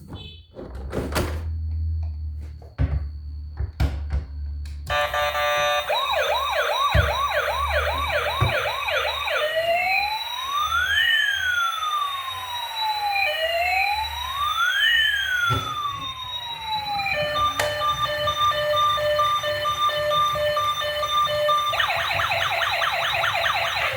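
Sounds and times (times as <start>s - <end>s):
toy electronic siren: 4.9s - 23.9s.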